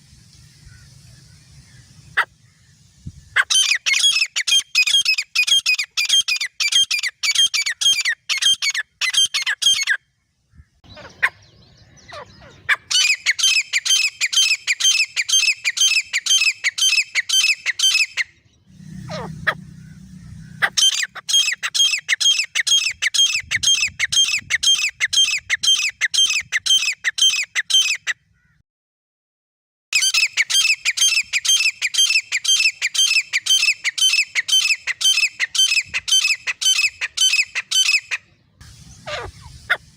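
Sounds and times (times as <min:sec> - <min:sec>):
birds calling shrill repeated notes: 0:00.0 - 0:28.6, 0:29.9 - 0:39.9
faint low rumble: 0:18.5 - 0:21.4.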